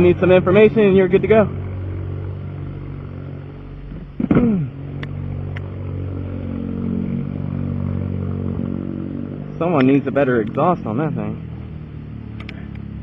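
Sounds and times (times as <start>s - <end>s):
car engine idling: 0.0s - 8.6s, 9.3s - 13.0s
faint clicks: 12.4s - 12.9s.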